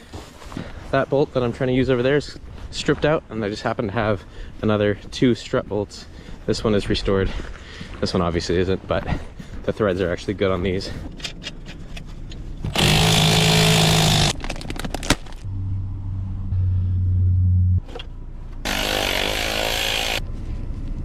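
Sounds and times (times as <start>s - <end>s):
handheld power tool running: 12.6s - 15.2s, 18.6s - 20.2s.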